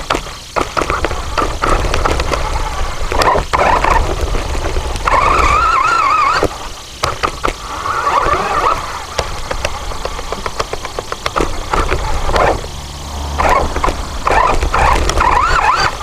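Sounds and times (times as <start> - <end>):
robot wheels rumbling on rough ground: 0.0 - 16.0
wavering high squeal: 5.0 - 6.8, 7.6 - 9.2, 12.1 - 16.0.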